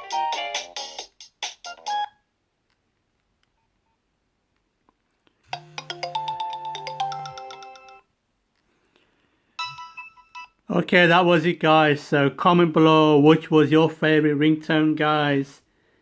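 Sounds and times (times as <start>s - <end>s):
phone vibration buzz: 5.5s - 7.3s
polyphonic phone ringtone: 5.5s - 8.1s, 9.6s - 10.6s.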